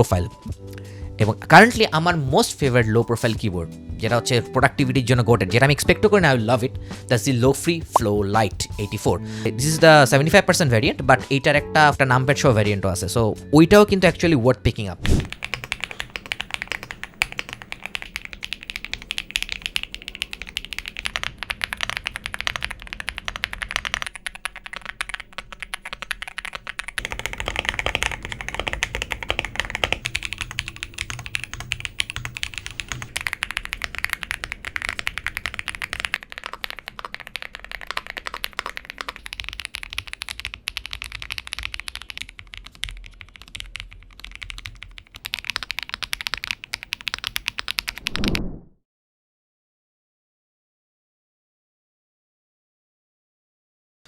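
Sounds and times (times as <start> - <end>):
keyboard keystroke clicks: 15.1 - 48.2.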